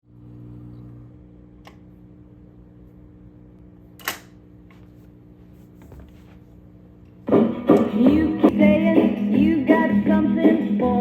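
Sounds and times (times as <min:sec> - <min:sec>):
amplifier electrical hum: 0:00.0 - 0:08.4.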